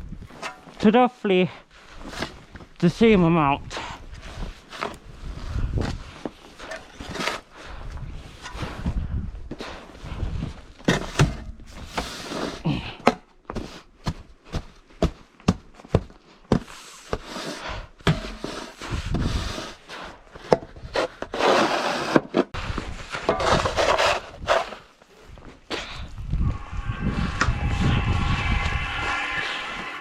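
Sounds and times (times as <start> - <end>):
snow shovel scraping snow: 11.9 - 12.6, 21.3 - 22.2, 23.4 - 24.8.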